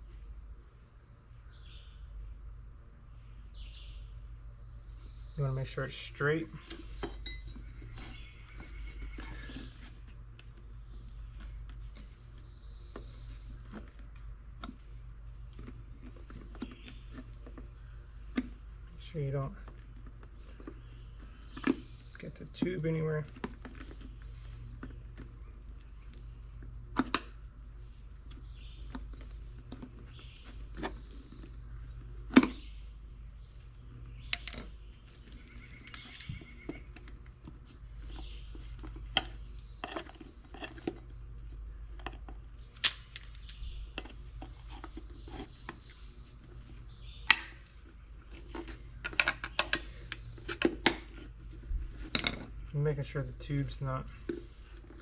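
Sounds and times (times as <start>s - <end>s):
tools and metal parts knocking: 6.7s - 9.3s, 48.6s - 51.0s.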